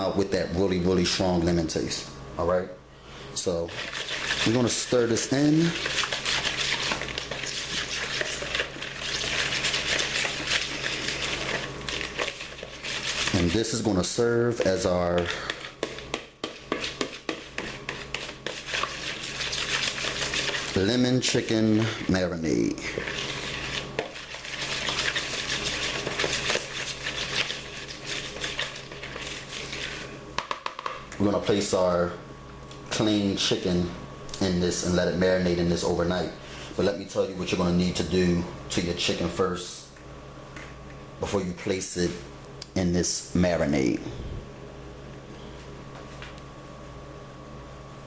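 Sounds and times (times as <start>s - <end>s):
spoon stirring in a bowl: 3.7s - 30.8s.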